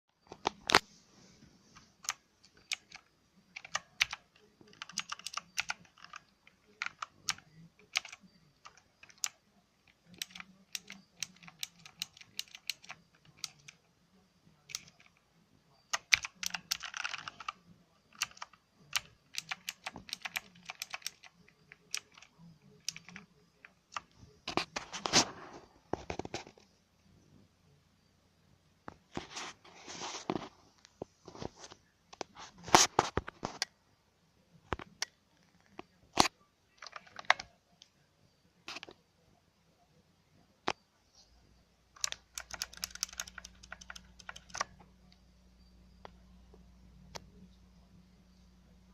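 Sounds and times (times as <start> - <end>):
mechanical keyboard typing: 1.9 - 13.8, 14.6 - 15.2, 15.9 - 24.9, 36.8 - 37.5, 41.9 - 44.8.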